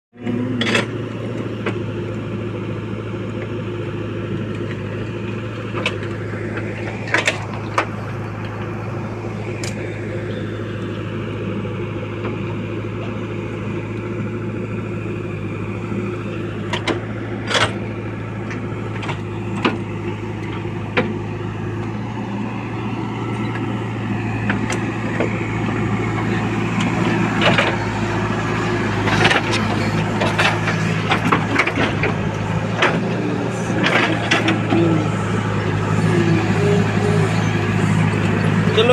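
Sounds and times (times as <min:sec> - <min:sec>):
earthmover engine running: 0:00.1 - 0:38.9
sharp knocks and clanks: 0:29.0 - 0:33.2, 0:33.8 - 0:34.8.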